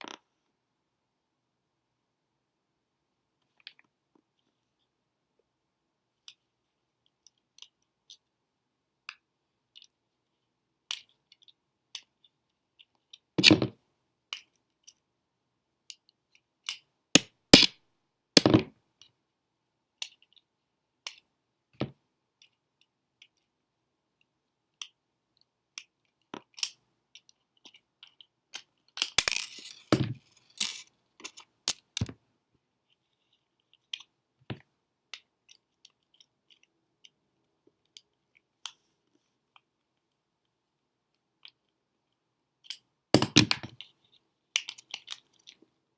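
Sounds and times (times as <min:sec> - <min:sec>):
plastic parts clicking and knocking: 0:42.6 - 0:45.6.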